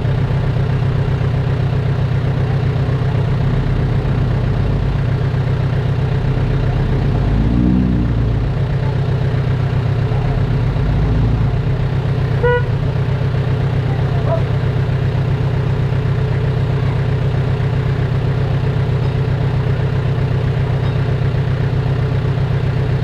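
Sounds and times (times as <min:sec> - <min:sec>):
heavy diesel engine running: 0:00.0 - 0:23.0
short horn toot: 0:12.4 - 0:12.8.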